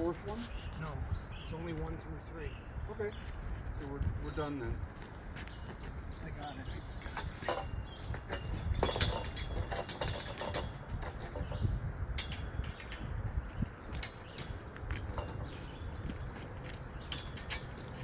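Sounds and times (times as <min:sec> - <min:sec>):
metal hardware clicks and knocks: 0:06.4 - 0:11.6, 0:13.9 - 0:15.6, 0:17.0 - 0:18.0.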